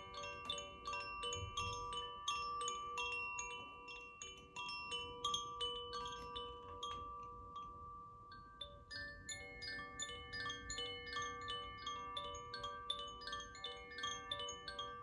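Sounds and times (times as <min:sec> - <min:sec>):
chimes tinkling: 0:00.0 - 0:15.0.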